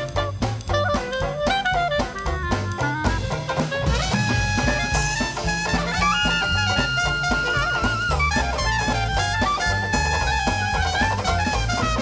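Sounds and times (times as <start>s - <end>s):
jazz band playing live: 0.0s - 12.0s.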